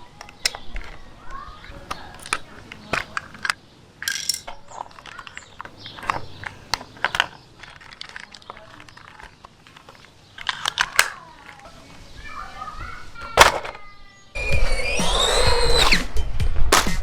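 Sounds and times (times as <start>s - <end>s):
hard objects clacking on hard surface: 1.9s - 11.6s.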